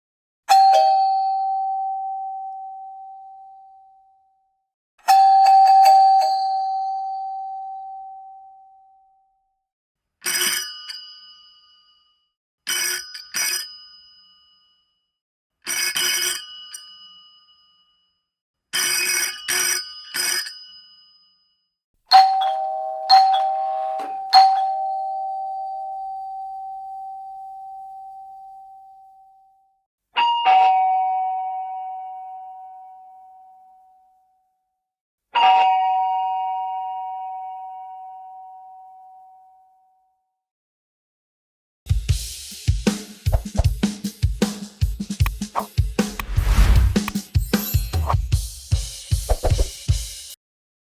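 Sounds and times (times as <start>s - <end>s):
short bright doorbell rings: 21.5s - 26.2s
doorbell chime strikes: 22.1s - 25.7s.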